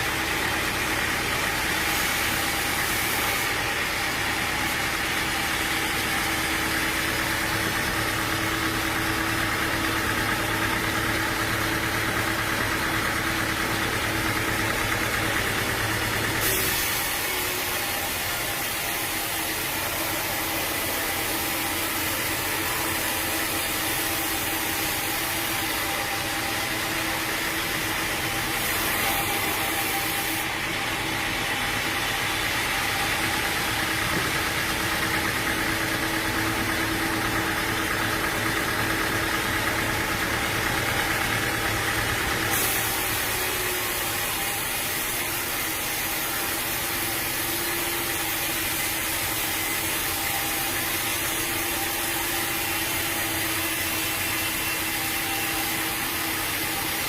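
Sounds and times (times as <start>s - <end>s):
sawmill machinery drone: 0.0s - 57.0s
hiss: 1.3s - 11.2s, 14.0s - 30.5s, 40.9s - 57.0s.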